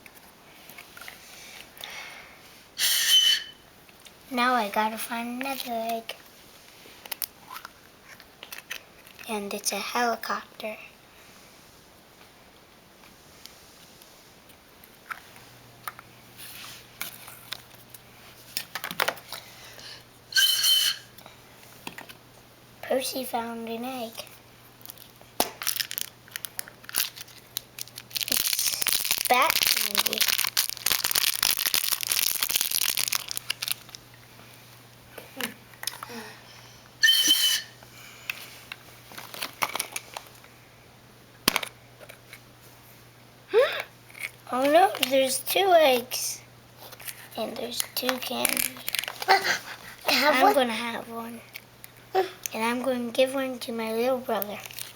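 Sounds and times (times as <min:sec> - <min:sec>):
short shrill whistle: 0:02.8 - 0:03.6, 0:20.3 - 0:21.1, 0:37.0 - 0:37.8
plastic toys and wrappers clicking: 0:07.0 - 0:09.2, 0:24.8 - 0:34.0, 0:39.1 - 0:40.4, 0:47.8 - 0:49.6, 0:54.4 - 0:54.9.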